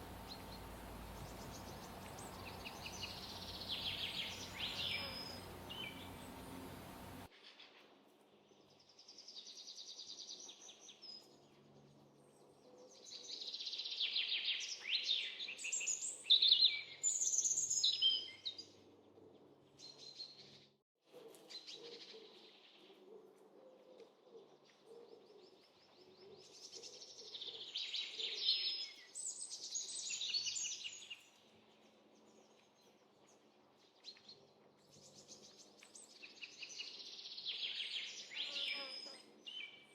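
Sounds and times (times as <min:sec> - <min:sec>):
songbirds chirping: 0:00.0 - 0:07.7, 0:24.0 - 0:39.9.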